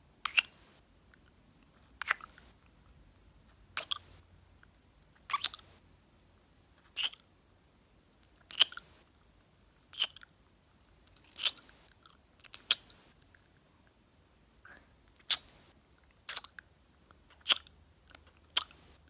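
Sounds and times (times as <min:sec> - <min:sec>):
kissing and mouth sounds: 0:00.3 - 0:00.6, 0:02.0 - 0:02.5, 0:03.8 - 0:04.1, 0:05.3 - 0:05.7, 0:06.9 - 0:07.2, 0:08.5 - 0:08.9, 0:09.9 - 0:10.2, 0:11.3 - 0:11.8, 0:12.5 - 0:13.1, 0:15.2 - 0:15.6, 0:16.2 - 0:16.6, 0:17.3 - 0:19.0.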